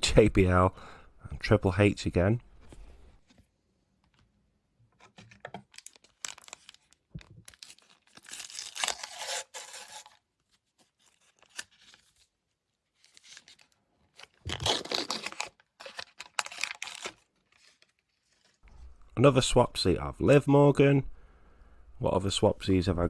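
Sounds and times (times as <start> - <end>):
wrapper tearing and crinkling: 5.7 - 10.2, 10.9 - 12.2, 13.0 - 18.6.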